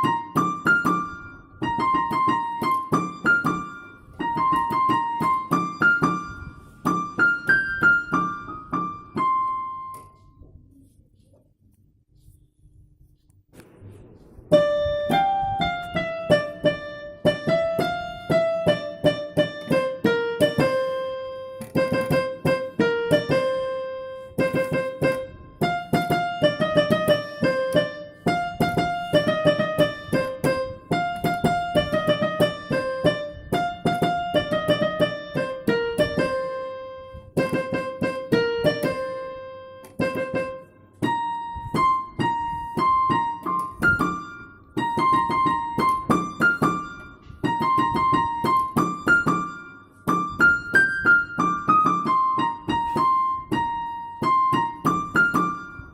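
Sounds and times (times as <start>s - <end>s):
piano melody: 0.0s - 11.0s, 13.5s - 55.9s.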